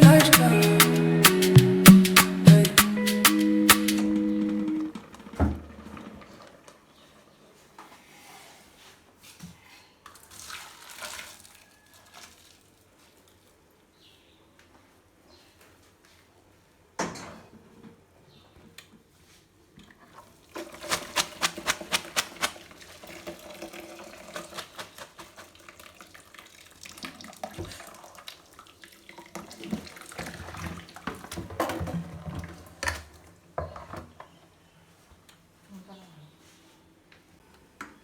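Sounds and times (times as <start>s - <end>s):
water running and splashing: 20.3s - 31.6s.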